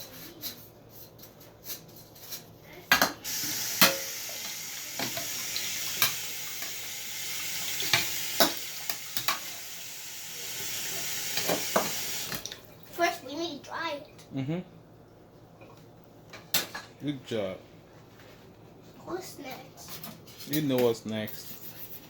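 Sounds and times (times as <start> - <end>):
dishes clinking: 2.9 - 6.8
tap water running into sink: 3.2 - 12.7.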